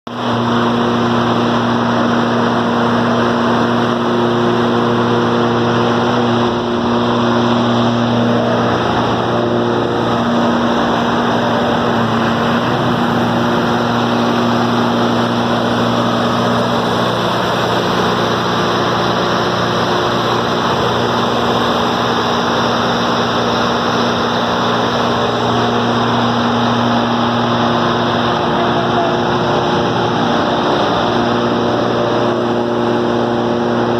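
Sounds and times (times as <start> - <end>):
diesel engine running: 0.1 - 33.9.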